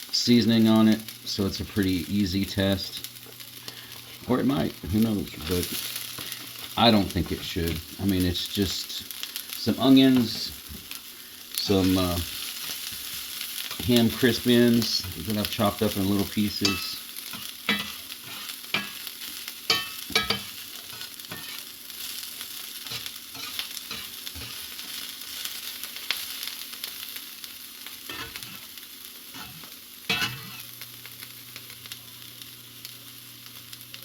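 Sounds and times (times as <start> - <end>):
food sizzling in a pan: 0.0 - 34.0
utensil scraping a pan: 19.7 - 21.7, 22.8 - 25.0, 28.1 - 28.7, 29.4 - 30.7.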